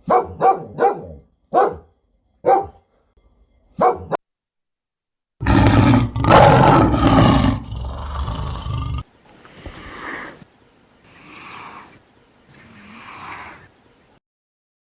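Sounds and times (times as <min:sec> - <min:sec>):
lion roaring: 0:05.4 - 0:09.0, 0:11.1 - 0:13.7.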